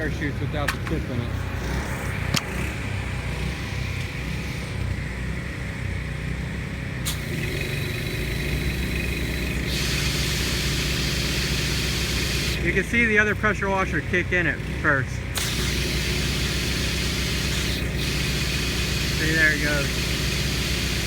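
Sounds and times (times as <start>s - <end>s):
pressure washer engines droning: 0.0s - 21.0s
water jet hissing: 7.0s - 12.8s, 15.4s - 21.0s.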